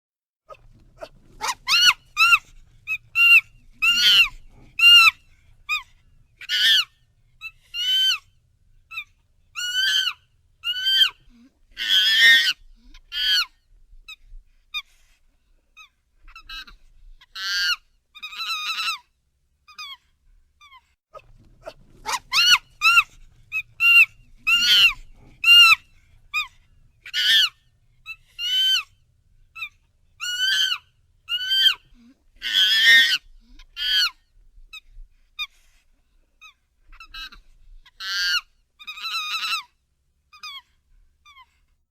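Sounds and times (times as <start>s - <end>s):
chimpanzee screaming: 1.0s - 5.8s, 6.4s - 6.9s, 9.6s - 11.2s, 11.8s - 13.5s, 21.6s - 28.9s, 29.6s - 33.2s, 38.0s - 39.6s.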